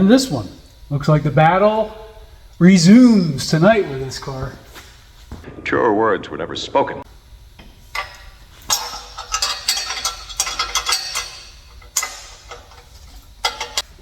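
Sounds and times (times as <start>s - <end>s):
metal tools clinking and rattling: 8.0s - 13.9s.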